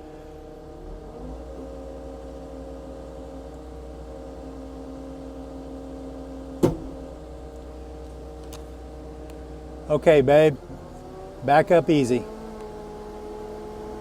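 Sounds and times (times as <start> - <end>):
sharp knock: 6.6 - 7.2
diesel engine humming: 6.6 - 7.4.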